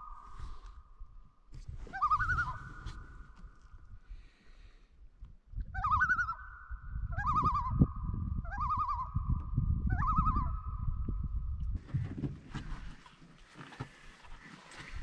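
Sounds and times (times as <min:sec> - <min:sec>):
bird calling: 0:01.8 - 0:03.6, 0:05.8 - 0:10.9.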